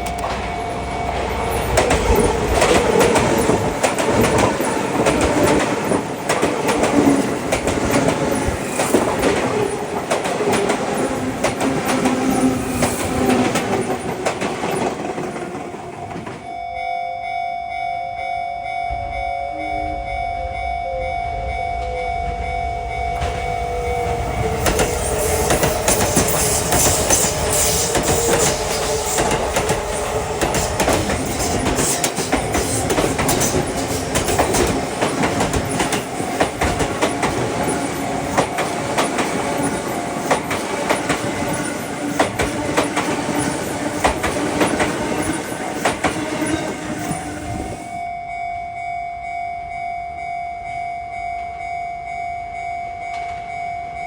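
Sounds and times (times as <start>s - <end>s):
train wheels clacking over rail joints: 0.0s - 16.4s, 23.1s - 47.9s
level crossing warning bell: 0.0s - 54.0s
electric train motor whine: 18.9s - 48.1s.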